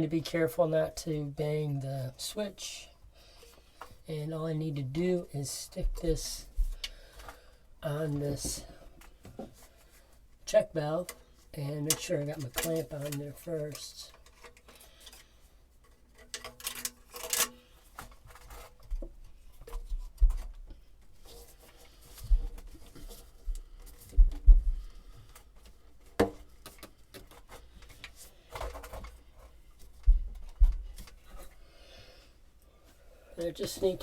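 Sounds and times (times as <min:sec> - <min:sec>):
plastic pipe clicks and rubbing: 0:11.0 - 0:31.6.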